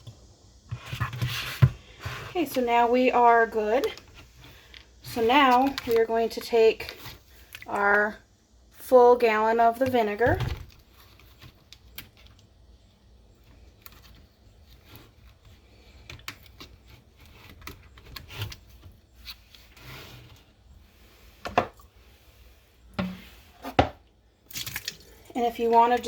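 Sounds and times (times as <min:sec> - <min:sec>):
plastic bottles clicking and rustling: 0:03.8 - 0:08.0.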